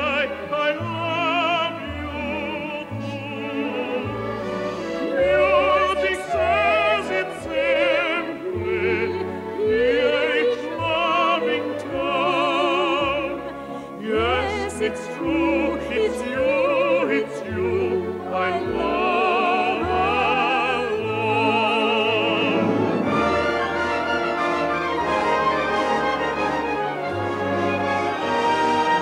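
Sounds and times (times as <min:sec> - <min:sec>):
operatic singing: 0:00.0 - 0:29.0
orchestra: 0:00.0 - 0:29.0.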